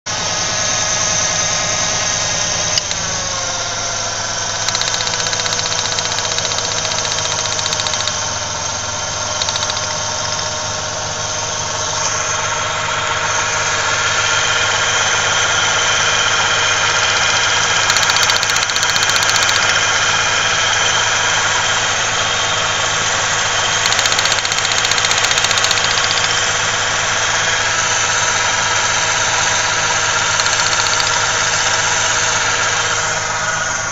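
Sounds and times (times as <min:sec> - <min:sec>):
engine idling: 0:00.0 - 0:33.9
click: 0:02.7 - 0:03.0, 0:04.7 - 0:08.2, 0:09.4 - 0:09.9, 0:30.4 - 0:31.2.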